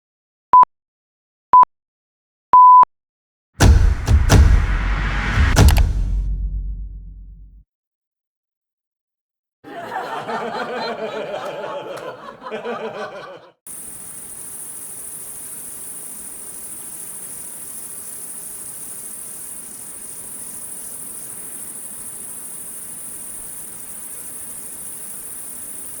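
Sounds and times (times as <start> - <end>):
crickets chirping: 12.6 - 26.0.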